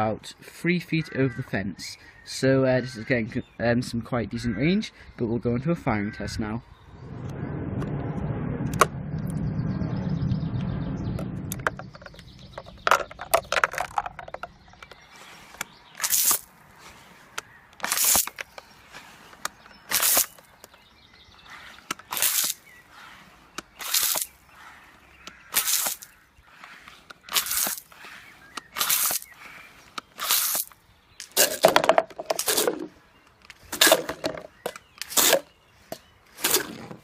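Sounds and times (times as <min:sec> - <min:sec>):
water blaster spurts: 0:16.0 - 0:16.4, 0:17.8 - 0:18.4, 0:19.9 - 0:20.4, 0:21.5 - 0:23.2, 0:23.8 - 0:24.8, 0:25.4 - 0:29.5, 0:30.2 - 0:32.9, 0:36.4 - 0:37.0.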